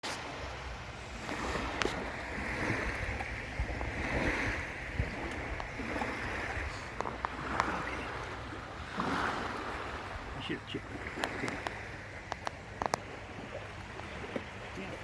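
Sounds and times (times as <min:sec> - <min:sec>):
lapping lake water: 0:00.0 - 0:15.0
wind buffeting microphone: 0:00.4 - 0:15.0
faint clicks: 0:11.2 - 0:13.0.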